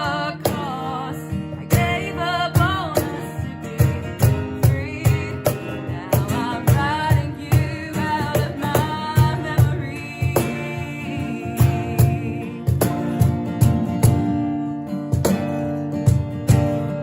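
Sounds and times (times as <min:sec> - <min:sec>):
woman singing: 0:00.0 - 0:13.2
guitar: 0:00.0 - 0:17.0.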